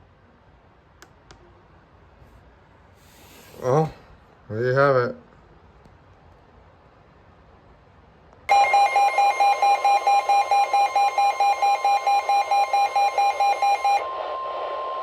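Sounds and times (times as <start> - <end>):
shrill alarm beeps: 8.5 - 15.0
warning alarm tone: 8.5 - 15.0.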